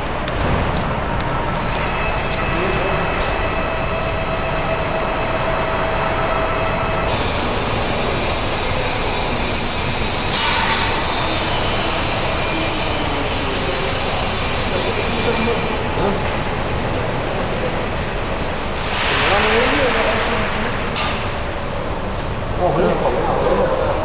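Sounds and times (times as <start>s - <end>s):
faint machine whine: 0.0s - 24.0s
welding machinery running: 0.0s - 24.0s
loud hiss: 18.6s - 22.5s.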